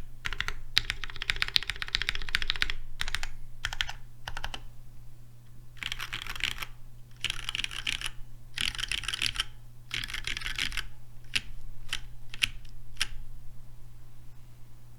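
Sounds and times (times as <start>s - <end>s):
mechanical keyboard typing: 0.2s - 4.7s, 5.8s - 13.2s.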